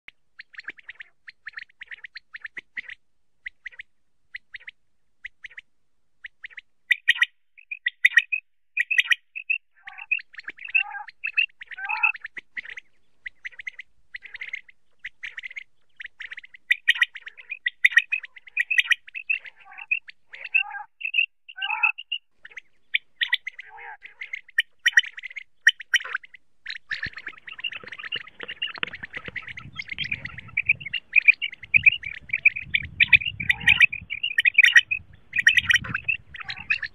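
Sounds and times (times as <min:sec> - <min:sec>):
quail chirping calls: 0:00.4 - 0:05.6, 0:06.2 - 0:36.9.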